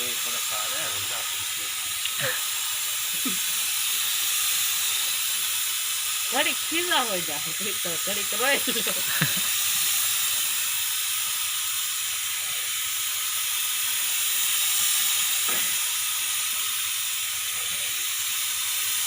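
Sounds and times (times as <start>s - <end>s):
spray gun air hiss: 0.0s - 19.0s.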